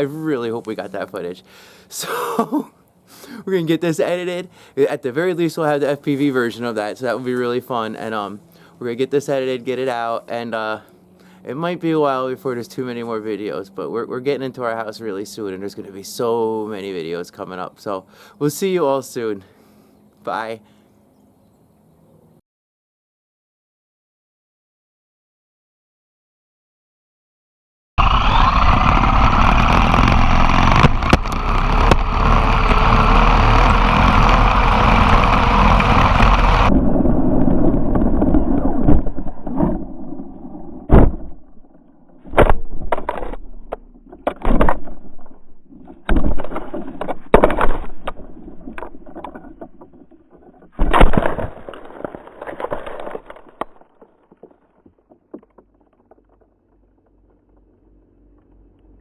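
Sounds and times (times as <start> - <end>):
toy truck motor and wind rush: 28.0 - 39.0
toy truck crashing and tumbling: 42.2 - 56.5.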